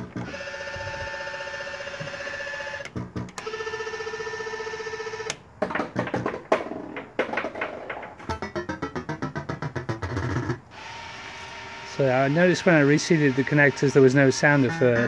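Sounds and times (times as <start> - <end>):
arcade game warbling tone: 8.2 - 10.6, 14.4 - 15.0
choppy electronic sounds: 8.3 - 10.7, 14.1 - 15.0.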